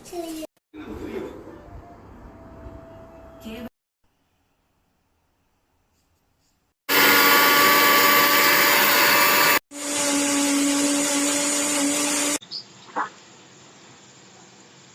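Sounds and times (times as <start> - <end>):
mixer grinder motor running: 6.9 - 12.4.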